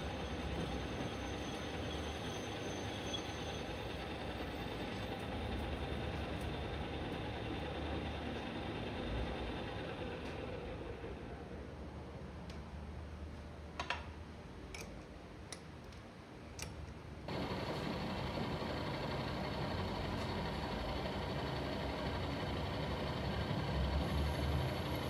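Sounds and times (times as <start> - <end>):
mechanical running noise: 17.3 - 25.0.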